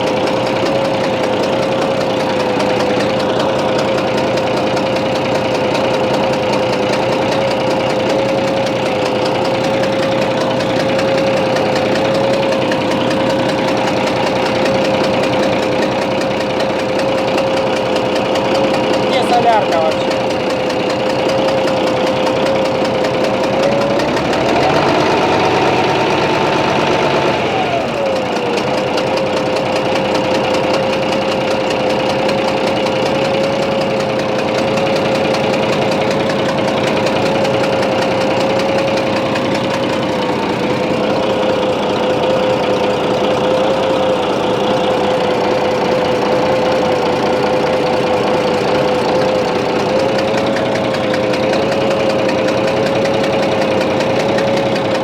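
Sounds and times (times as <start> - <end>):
engine huffing noise: 0.0 - 27.8
diesel engine running and revving: 0.0 - 55.0.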